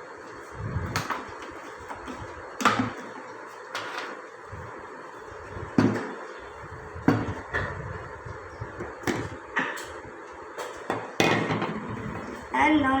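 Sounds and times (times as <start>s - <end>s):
kitchen containers and utensils knocking: 10.9s - 12.3s.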